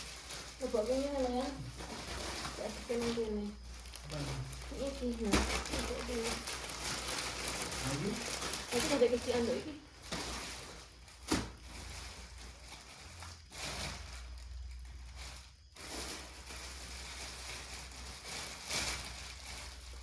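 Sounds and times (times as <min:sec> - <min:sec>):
packaging and cloth rustling: 0:00.0 - 0:20.0.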